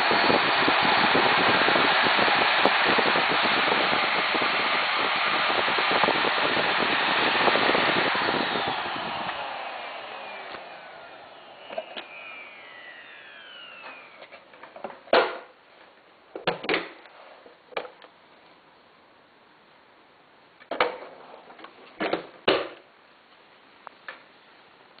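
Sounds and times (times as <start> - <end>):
vacuum cleaner motor winding down: 0.0 - 14.8.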